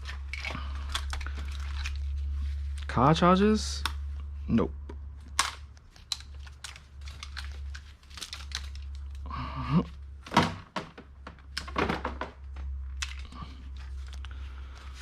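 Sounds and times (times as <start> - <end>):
low steady hum: 0.0 - 15.0
plastic chargers clicking and knocking: 10.3 - 13.3.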